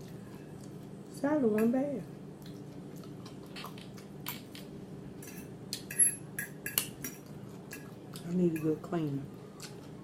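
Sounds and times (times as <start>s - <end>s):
fork clinking against plate: 5.2s - 8.8s.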